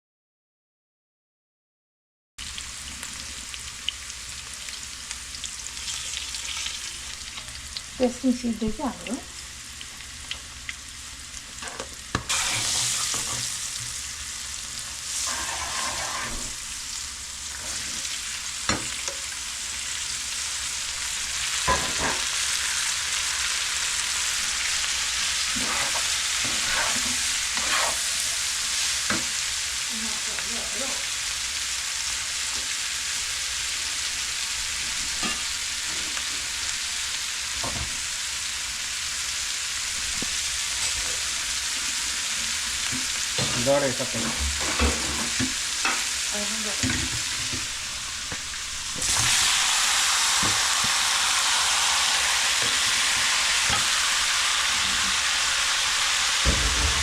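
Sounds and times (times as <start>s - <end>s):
chicken sizzling in oil: 2.4s - 57.0s
spoon scraping and knocking pan: 11.6s - 13.9s, 15.2s - 16.6s, 21.6s - 22.3s, 25.5s - 28.2s, 52.6s - 54.0s.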